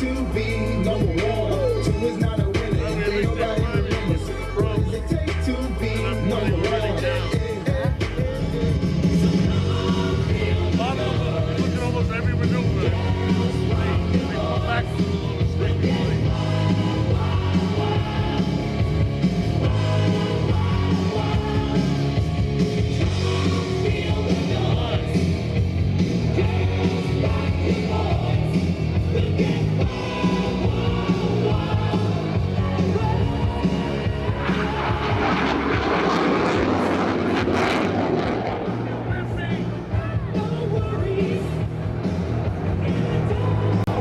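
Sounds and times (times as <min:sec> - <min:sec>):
rock music with singing: 0:00.0 - 0:44.0.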